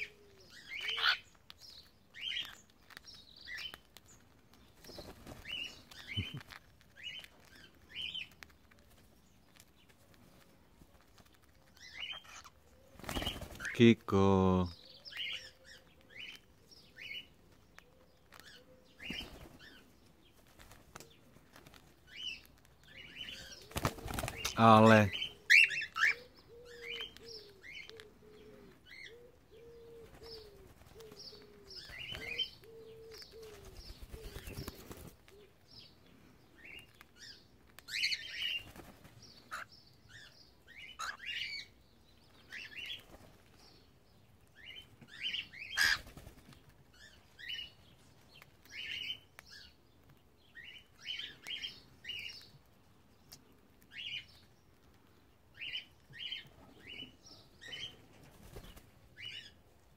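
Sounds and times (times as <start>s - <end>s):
cockatiels chirping: 0.0s - 3.8s, 11.7s - 12.6s, 25.1s - 28.0s, 39.5s - 41.7s, 44.6s - 46.0s.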